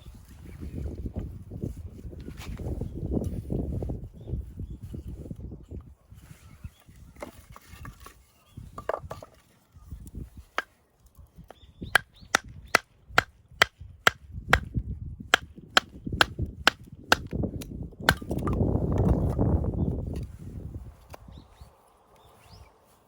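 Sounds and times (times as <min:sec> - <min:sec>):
wood rustling and scraping: 0:00.1 - 0:03.9, 0:04.8 - 0:10.8
axe chopping kindling: 0:12.0 - 0:19.5.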